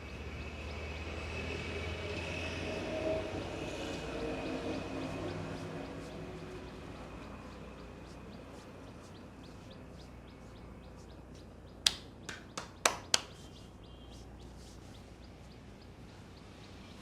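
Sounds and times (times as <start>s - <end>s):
faint chirping ticks: 3.9s - 17.0s
hands cracking during head massage: 11.8s - 13.6s.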